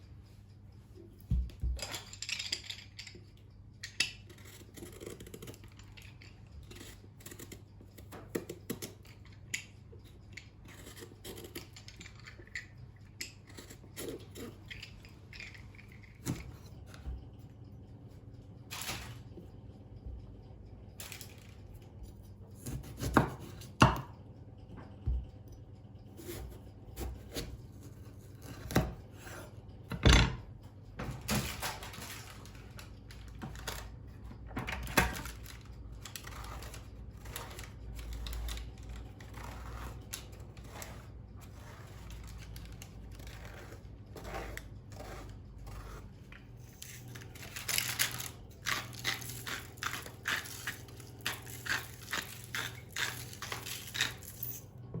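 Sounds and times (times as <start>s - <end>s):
utensils clattering on hard surfaces: 1.7s - 3.2s, 31.2s - 33.9s, 46.7s - 54.7s
knife chopping on a board: 22.6s - 24.1s.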